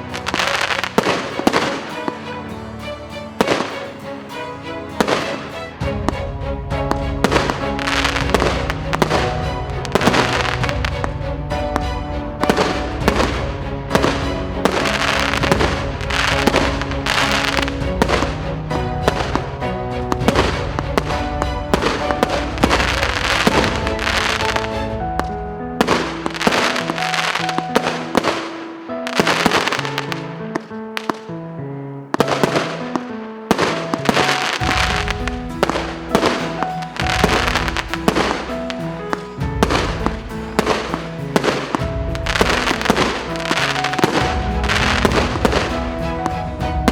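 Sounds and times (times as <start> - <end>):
background music: 0.0 - 46.9
firework cake bangs: 33.5 - 38.8.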